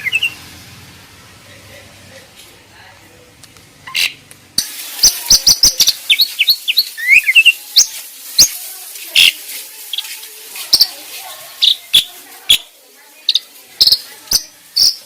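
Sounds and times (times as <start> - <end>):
bird song clicks and whistles: 5.0 - 8.6.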